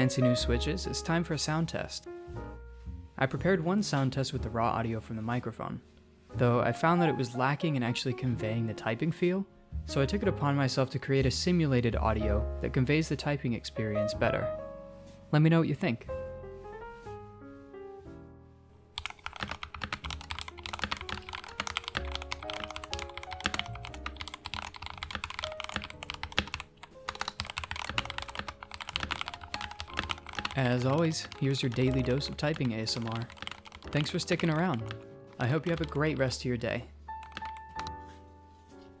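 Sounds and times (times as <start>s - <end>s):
background music: 0.0s - 39.0s
typing on mechanical keyboard: 19.0s - 36.2s, 37.2s - 38.0s.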